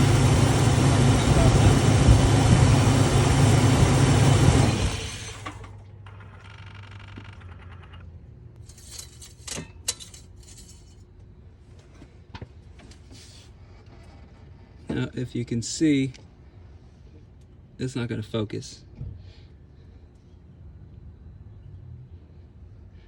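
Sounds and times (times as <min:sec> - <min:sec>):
engine running: 0:00.0 - 0:08.8.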